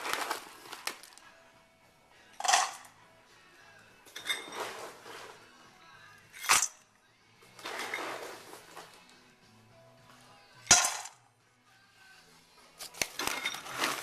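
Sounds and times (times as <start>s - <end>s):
faint background music: 0.0s - 14.0s
rustling and clattering: 4.1s - 5.5s, 7.5s - 9.1s, 12.8s - 14.0s.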